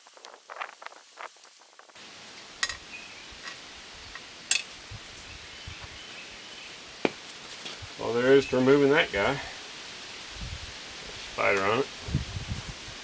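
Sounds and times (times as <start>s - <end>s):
sharp metal clinks: 2.6s - 2.9s, 4.5s - 4.7s
metal parts scraping and clicking: 4.5s - 4.7s.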